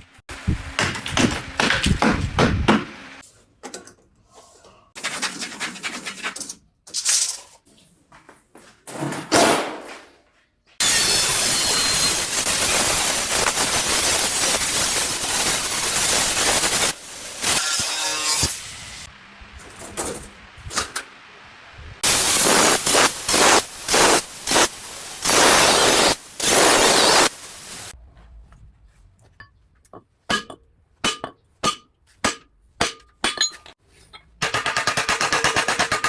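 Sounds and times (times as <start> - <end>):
loud noisy bursts: 10.8 - 19.5, 21.4 - 27.9.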